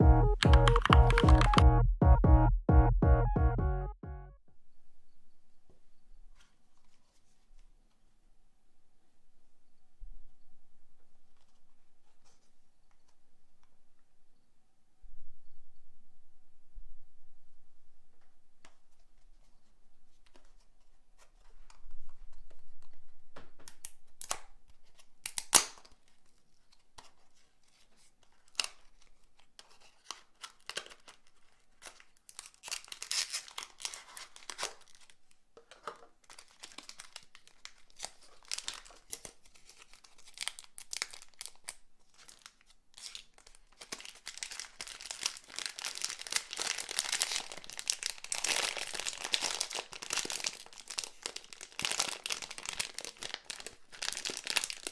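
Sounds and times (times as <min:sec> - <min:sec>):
sharp clicks: 0:00.2 - 0:01.6
packaging tearing and crinkling: 0:29.7 - 0:35.3, 0:36.2 - 0:54.9.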